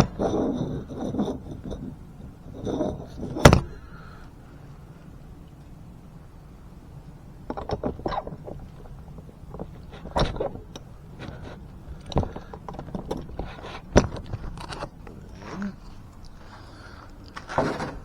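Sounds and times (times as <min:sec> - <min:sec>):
metal knocks and clunks: 0:00.0 - 0:03.8, 0:07.4 - 0:15.6, 0:17.4 - 0:18.0.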